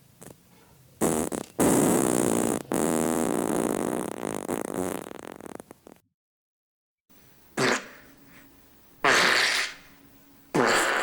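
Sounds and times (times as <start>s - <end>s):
wet fart sound effects: 1.0s - 6.0s, 7.6s - 8.0s, 9.0s - 9.8s, 10.5s - 11.0s.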